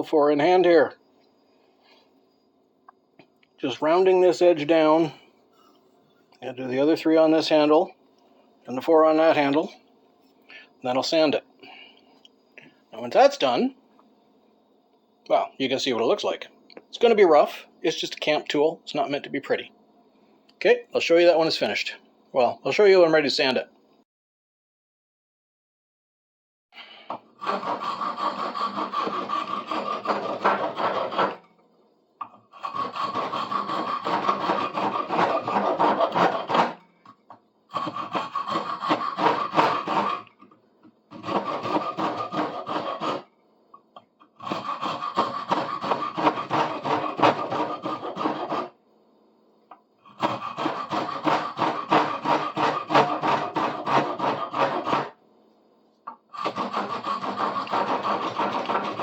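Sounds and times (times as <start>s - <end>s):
rasp filing wood: 27.4s - 31.5s, 32.5s - 36.8s, 37.7s - 40.4s, 41.1s - 43.3s, 44.4s - 48.8s, 50.1s - 55.2s, 56.4s - 59.0s.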